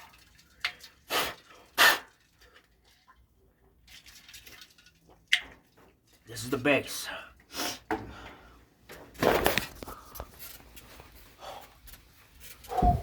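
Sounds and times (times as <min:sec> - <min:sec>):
person breathing hard: 0:11.3 - 0:11.8.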